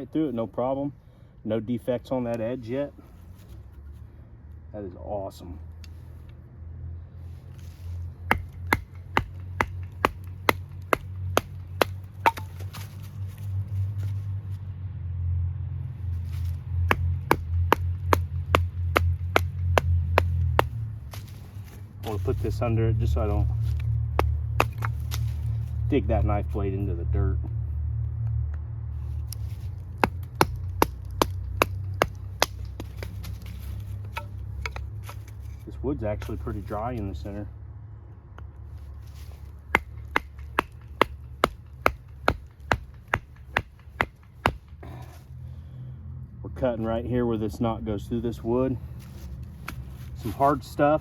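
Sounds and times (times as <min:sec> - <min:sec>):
steady low hum: 0:00.0 - 0:51.0
wooden baton striking knife: 0:08.3 - 0:13.0, 0:29.2 - 0:35.6, 0:39.7 - 0:45.1.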